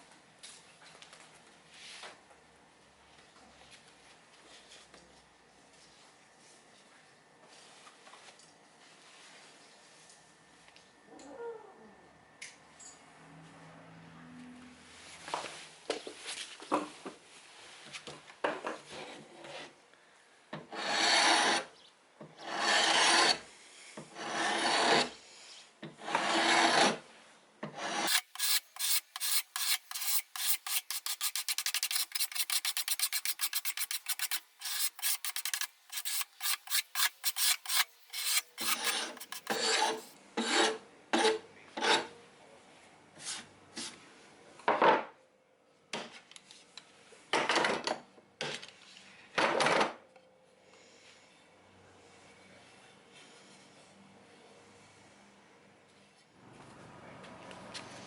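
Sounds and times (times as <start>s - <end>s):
hand file rasping on steel: 20.7s - 21.6s, 22.4s - 23.4s, 24.2s - 25.1s, 26.0s - 27.0s, 27.8s - 40.8s.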